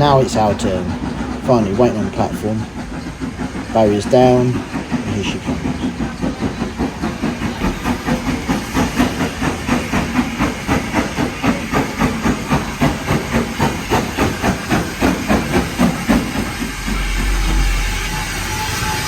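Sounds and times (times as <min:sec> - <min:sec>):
hissing steam: 0:00.0 - 0:19.0
steam locomotive exhaust beats: 0:00.0 - 0:19.0
low rumble: 0:16.4 - 0:19.0.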